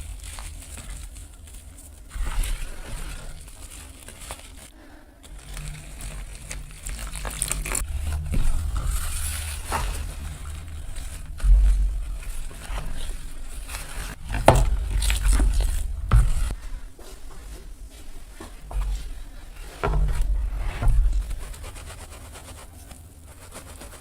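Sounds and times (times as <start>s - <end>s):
brittle dry material crushing: 0.0s - 17.0s
low thuds: 7.8s - 21.8s.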